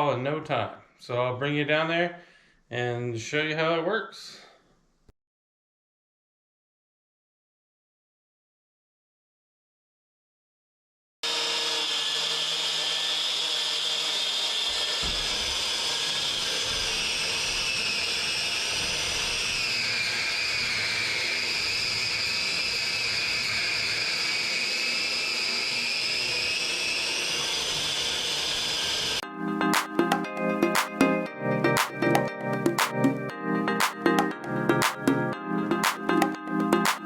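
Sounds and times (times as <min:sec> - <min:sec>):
drywall sander motor whine: 0:11.2 - 0:29.2.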